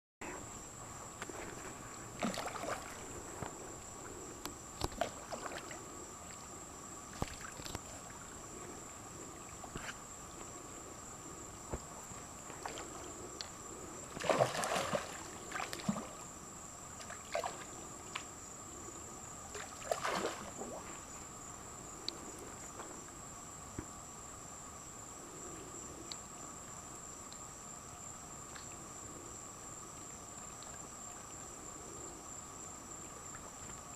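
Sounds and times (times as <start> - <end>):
crickets chirring: 0.2 - 33.9
otters splashing in water: 2.2 - 3.0, 14.2 - 16.1.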